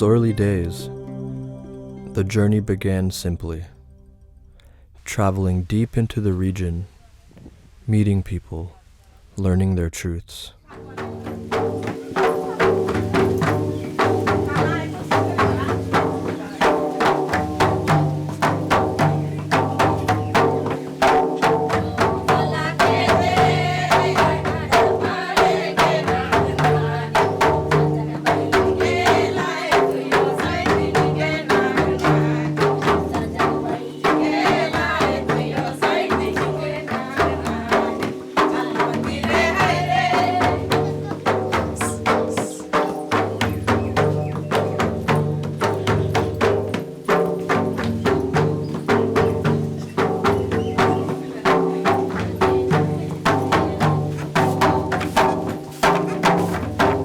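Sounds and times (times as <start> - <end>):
percussion beat: 0.0 - 3.9, 10.6 - 57.0
melody line: 0.0 - 4.6
sustained low notes: 0.0 - 6.0.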